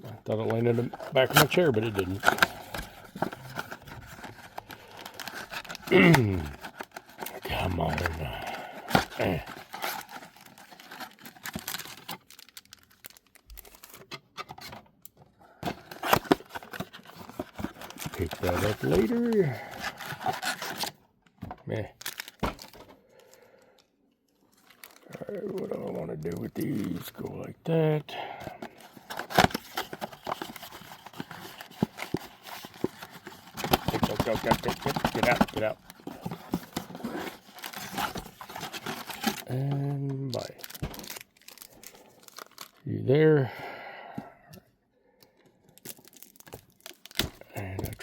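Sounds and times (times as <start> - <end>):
plastic wrapping crinkling and tearing: 0.0 - 14.4, 15.8 - 21.0, 21.7 - 42.8, 45.6 - 48.0
card packs tapping and clicking: 0.0 - 14.8, 15.6 - 23.4, 28.1 - 42.8, 45.3 - 48.0
rustling: 0.4 - 14.0, 28.6 - 42.8.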